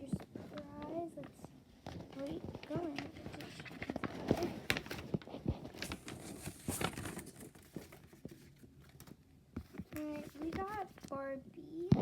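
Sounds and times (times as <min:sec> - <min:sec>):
paper bag crinkling and tearing: 0:01.9 - 0:09.2.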